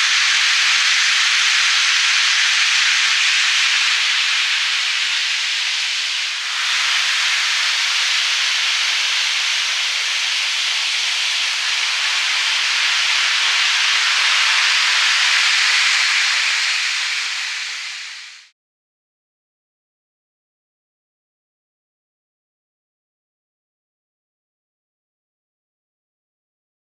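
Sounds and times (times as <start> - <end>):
model trains running on track: 0.0 - 18.5.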